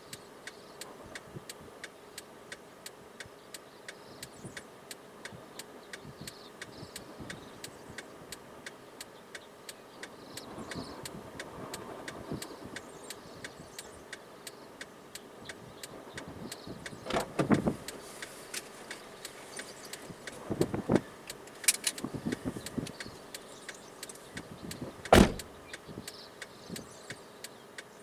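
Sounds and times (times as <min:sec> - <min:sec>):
turn signal relay ticking: 0:12.8 - 0:27.9.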